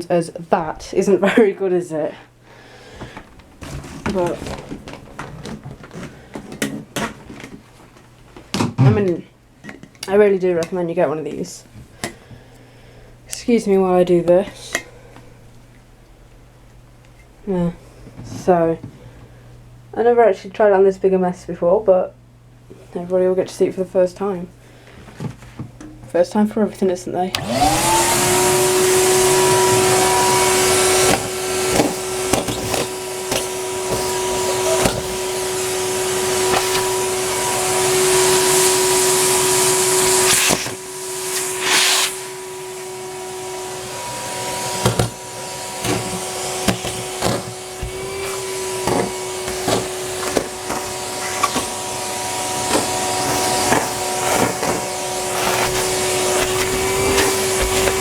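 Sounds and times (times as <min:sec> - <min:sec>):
vacuum cleaner motor whine: 0:27.4 - 0:58.0
debris rattling up a hose: 0:44.7 - 0:58.0.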